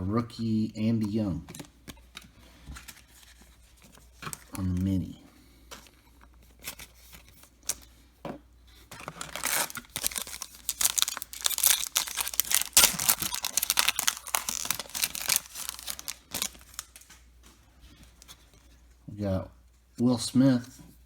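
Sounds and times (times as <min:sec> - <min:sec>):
wrapper tearing and crinkling: 0:09.0 - 0:17.2.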